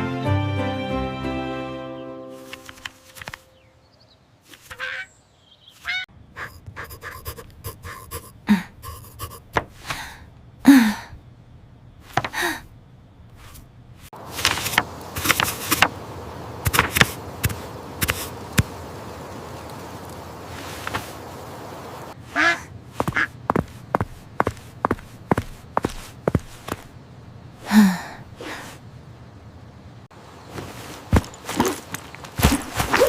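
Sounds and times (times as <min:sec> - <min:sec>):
breathy panting and gasping: 0:06.4 - 0:11.2
steady hiss: 0:13.3 - 0:31.3.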